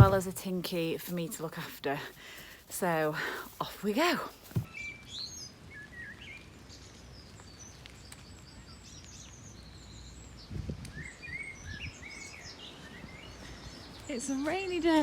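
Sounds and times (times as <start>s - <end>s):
soft thumps: 0.0s - 0.6s, 4.4s - 4.7s
small birds chirping: 0.0s - 15.0s.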